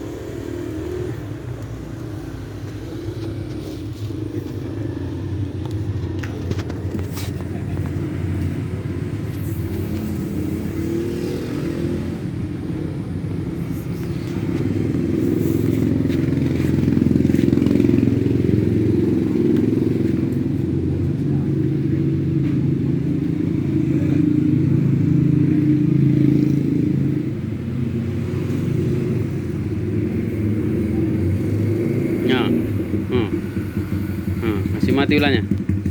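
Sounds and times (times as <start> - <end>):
low engine rumble: 0.0 - 25.8.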